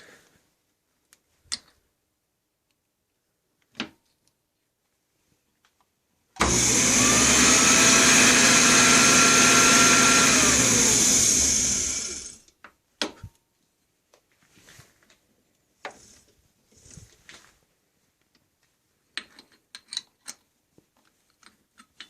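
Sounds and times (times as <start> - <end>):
lathe motor whine: 6.4 - 12.4.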